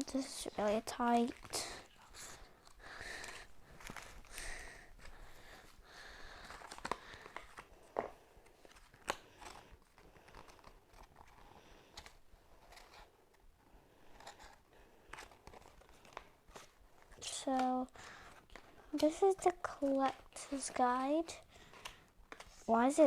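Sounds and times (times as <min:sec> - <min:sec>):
packaging rustling and crinkling: 0:00.2 - 0:13.4, 0:14.1 - 0:22.7.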